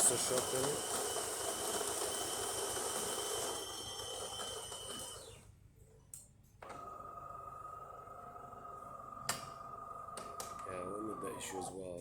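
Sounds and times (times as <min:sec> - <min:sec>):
coffee grinder running: 0:00.0 - 0:05.4
espresso machine whining hum: 0:00.0 - 0:05.5.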